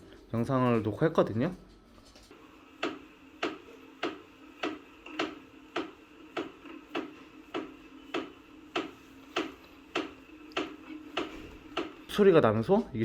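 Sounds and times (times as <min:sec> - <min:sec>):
exercise bike crank clicking: 0:02.8 - 0:12.1.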